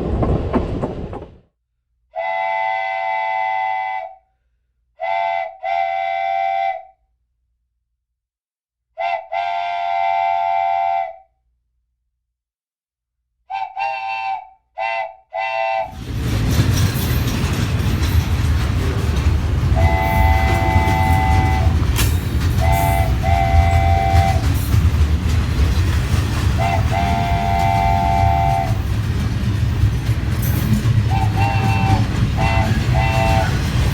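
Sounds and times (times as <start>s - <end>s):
passing train rumble: 0.0s - 1.4s, 15.8s - 33.9s
train horn blasts: 2.2s - 4.2s, 9.0s - 11.2s, 13.5s - 16.0s, 19.8s - 24.5s, 26.6s - 28.9s, 31.1s - 33.9s.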